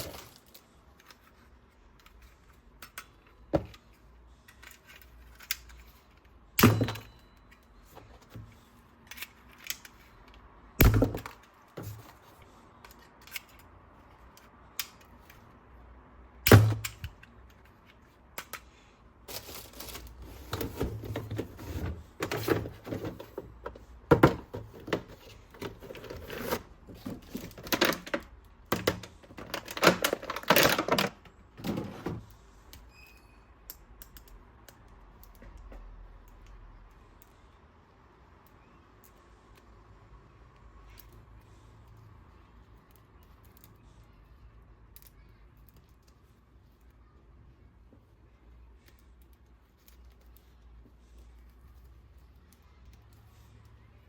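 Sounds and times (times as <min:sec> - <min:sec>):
packaging rustling: 0:00.0 - 0:00.8, 0:19.3 - 0:23.5.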